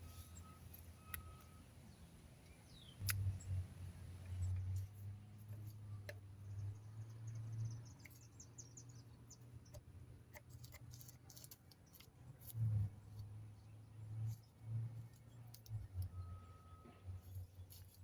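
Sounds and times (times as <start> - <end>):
tape crackling clicks: 2.4 - 3.4.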